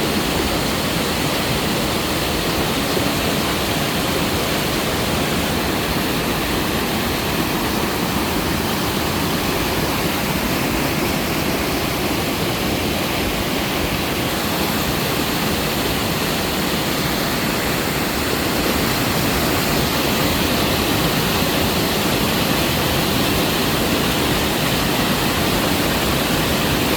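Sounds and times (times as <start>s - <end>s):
waterfall splashing onto rocks: 0.0s - 26.9s.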